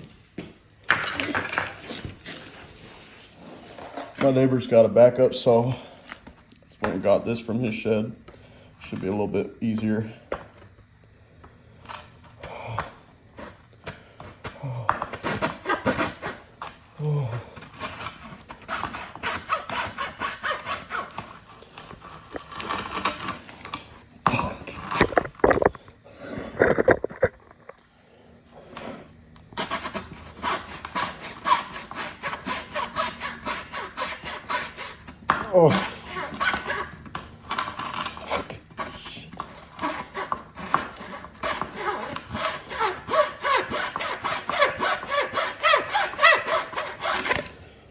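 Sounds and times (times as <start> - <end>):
hand saw cutting wood: 15.1 - 16.5, 17.6 - 23.8, 28.8 - 47.6.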